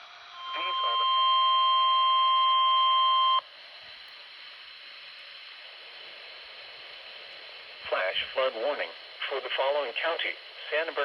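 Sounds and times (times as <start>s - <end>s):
low radio hiss: 0.2s - 11.0s.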